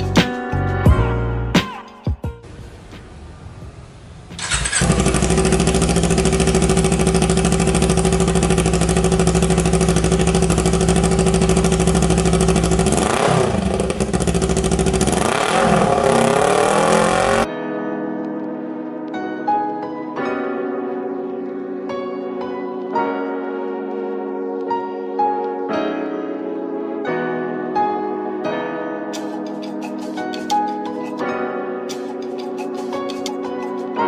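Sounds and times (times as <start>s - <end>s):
motorcycle engine idling and revving: 4.3s - 17.5s.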